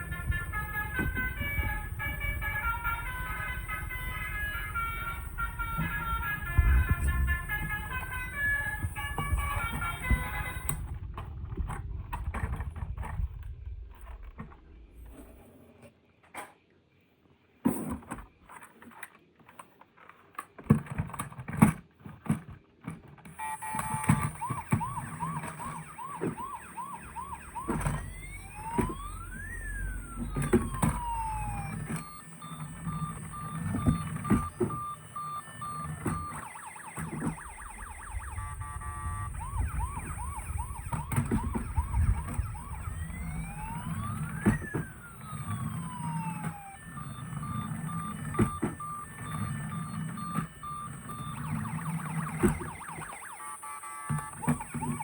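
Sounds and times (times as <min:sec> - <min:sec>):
toy electronic siren: 0:00.0 - 0:11.2, 0:23.3 - 0:55.0
knocks and clicks: 0:00.0 - 0:13.2, 0:23.4 - 0:55.0
plastic toys being handled: 0:18.0 - 0:55.0.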